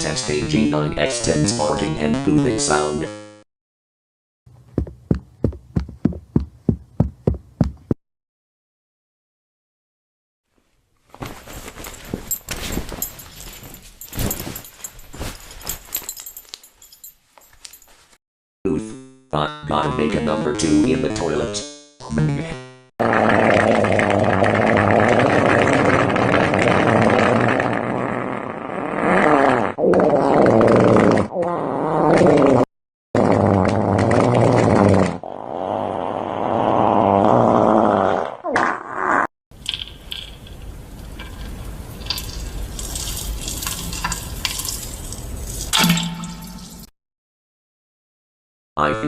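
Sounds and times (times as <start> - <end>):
comedic farting sound effect: 22.1 - 32.6, 33.2 - 39.3
wet spattering crackle: 41.2 - 46.9.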